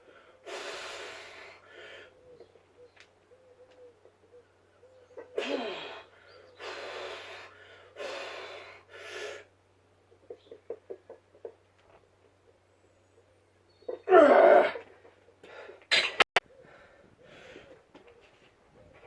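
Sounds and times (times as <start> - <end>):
person breathing hard: 0.0 - 2.2, 5.5 - 9.5, 16.5 - 17.8.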